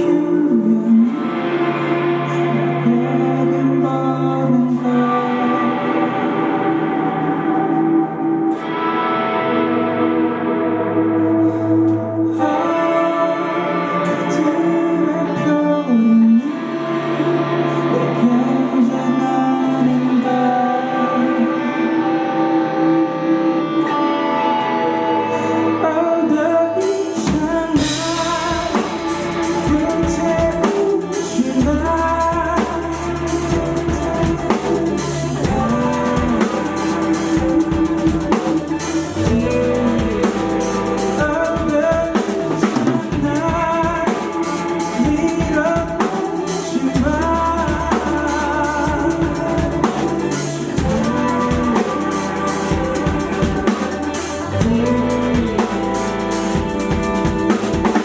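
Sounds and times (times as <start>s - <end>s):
held instrument tones: 0.0s - 58.0s
person singing: 0.0s - 58.0s
drum kit and bass beat: 27.1s - 58.0s.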